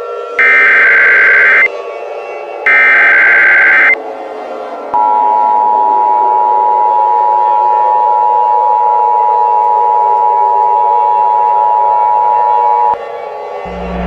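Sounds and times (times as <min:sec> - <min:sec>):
two-tone alert alarm: 0:00.4 - 0:01.7, 0:02.7 - 0:04.0
drone sliding down in pitch: 0:13.7 - 0:14.0.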